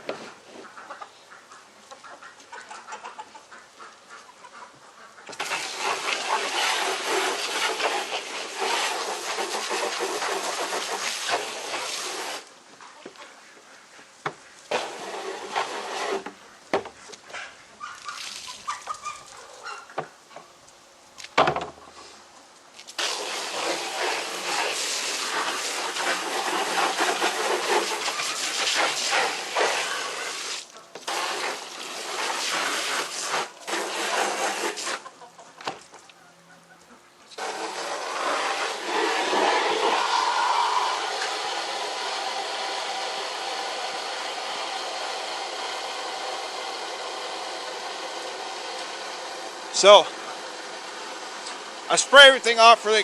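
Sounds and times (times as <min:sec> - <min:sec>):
faint poultry calls: 0:00.5 - 0:05.3, 0:12.8 - 0:14.7, 0:35.0 - 0:37.3
water spraying from hose: 0:05.3 - 0:12.5, 0:14.7 - 0:16.3, 0:18.0 - 0:19.4, 0:22.9 - 0:35.1, 0:37.4 - 0:53.0.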